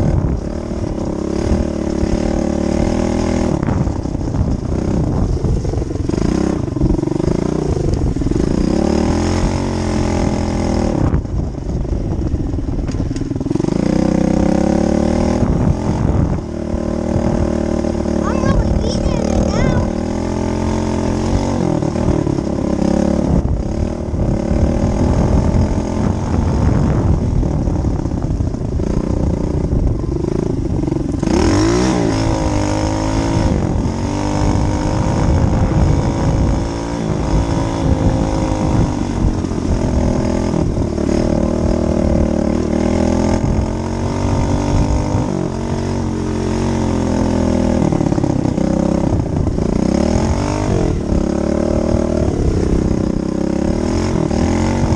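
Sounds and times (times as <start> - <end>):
dirt bike engine revving: 0.0 - 11.5, 13.0 - 54.9.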